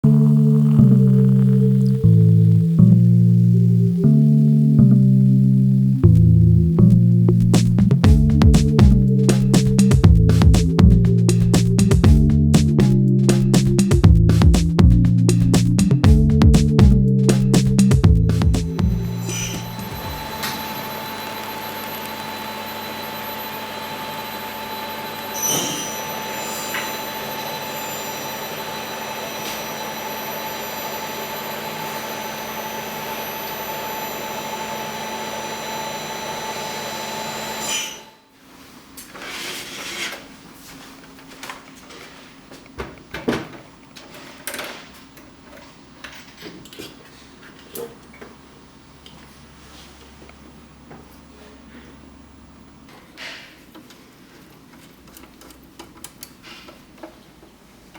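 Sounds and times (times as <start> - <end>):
machine whirring and whining: 18.8 - 38.1.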